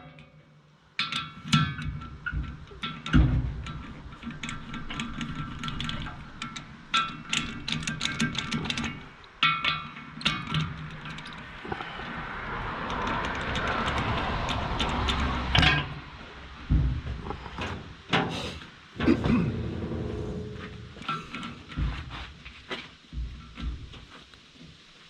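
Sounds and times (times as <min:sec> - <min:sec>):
metal clanks: 0:01.0 - 0:12.0, 0:12.9 - 0:24.1
metal scraping: 0:16.7 - 0:22.4.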